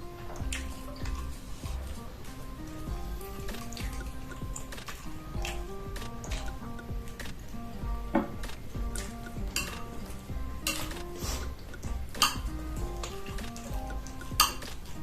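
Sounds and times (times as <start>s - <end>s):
background melody: 0.0s - 15.0s
utensils clinking on a dish: 9.0s - 11.2s, 12.2s - 15.0s.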